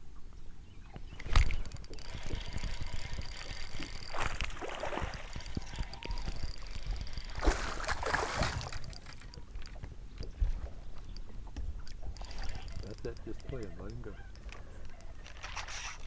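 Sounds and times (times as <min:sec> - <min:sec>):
water splashing beside boat: 0:01.0 - 0:13.8.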